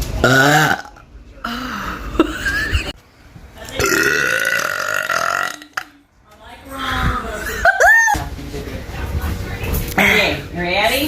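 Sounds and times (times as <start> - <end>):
woman burping loudly: 0.2 - 1.1, 3.8 - 6.0.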